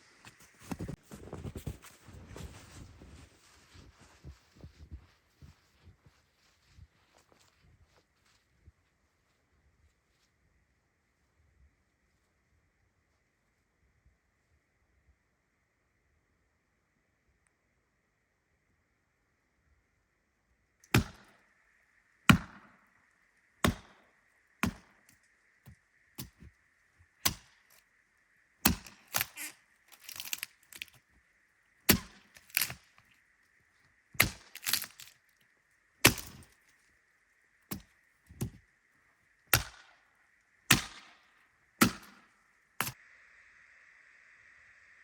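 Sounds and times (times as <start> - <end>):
wood chopping blows: 20.9 - 21.3, 22.3 - 22.8, 23.6 - 24.0, 24.6 - 25.1, 27.2 - 27.8, 28.6 - 31.0, 31.9 - 32.9, 34.2 - 35.2, 36.0 - 36.6, 39.5 - 40.0, 40.7 - 41.2, 41.8 - 43.0
crackling: 22.8 - 37.0.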